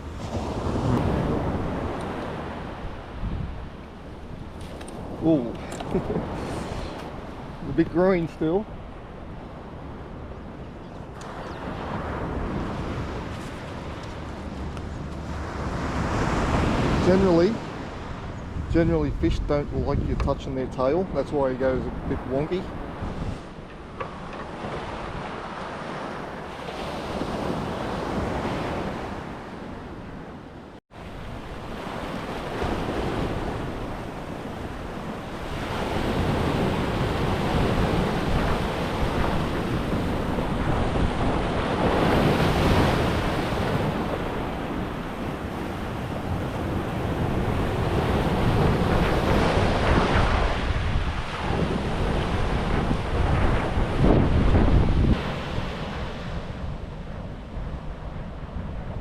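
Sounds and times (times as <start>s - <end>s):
surf breaking on beach: 0.0s - 3.7s, 11.2s - 18.3s, 30.9s - 59.0s
wind buffeting microphone: 0.0s - 59.0s.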